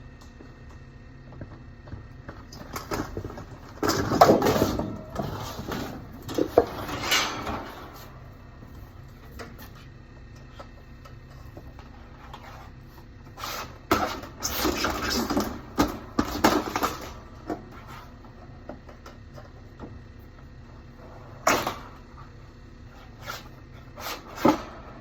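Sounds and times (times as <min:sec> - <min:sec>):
handling knocks and clatter: 0:00.2 - 0:12.8, 0:13.4 - 0:20.4.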